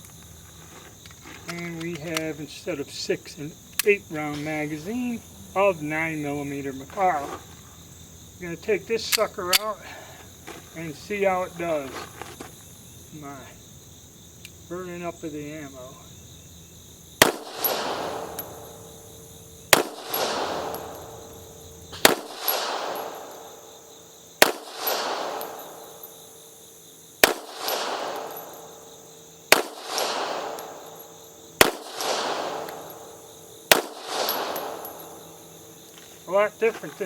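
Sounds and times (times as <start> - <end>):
crickets chirping: 0.0 - 37.0
pistol shots with echo: 17.2 - 26.5, 27.2 - 35.8.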